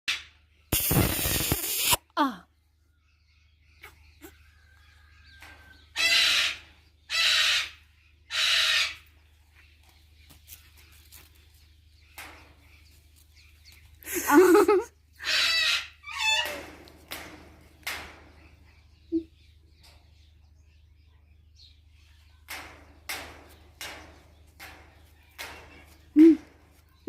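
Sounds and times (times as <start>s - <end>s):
parrots squawking: 6.0s - 9.0s, 15.2s - 16.6s.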